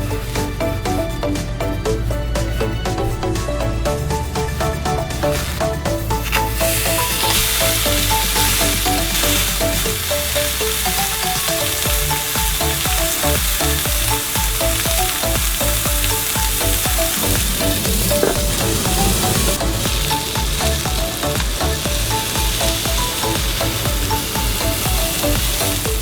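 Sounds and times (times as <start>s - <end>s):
background music: 0.0s - 26.0s
food sizzling in a pan: 5.3s - 26.0s.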